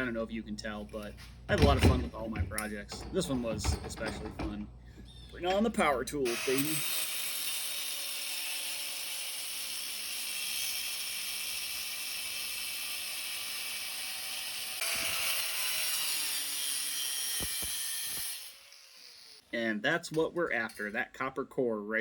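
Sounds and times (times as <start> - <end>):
power tool cutting metal: 6.2 - 19.4.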